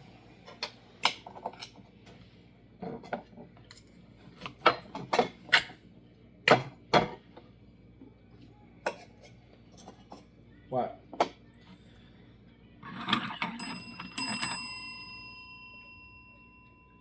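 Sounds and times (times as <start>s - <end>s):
clinks and knocks of hard objects: 12.9s - 15.0s.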